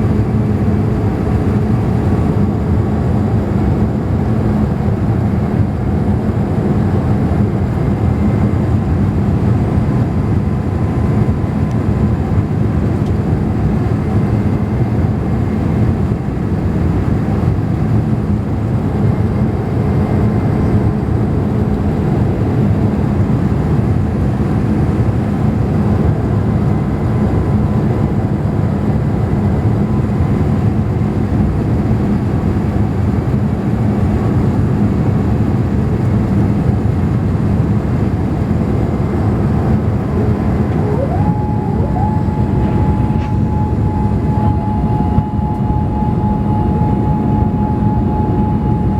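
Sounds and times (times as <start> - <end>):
airplane cabin rumble: 36.1 - 48.9
faint whining tones: 39.0 - 48.9.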